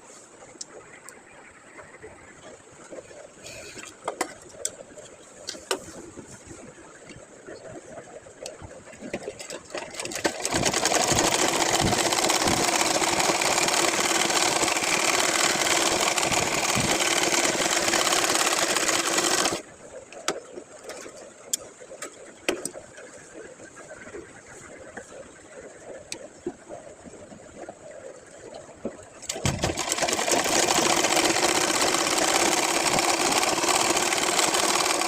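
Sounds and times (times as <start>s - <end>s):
sewing machine stitching: 9.8s - 19.6s, 29.3s - 35.0s.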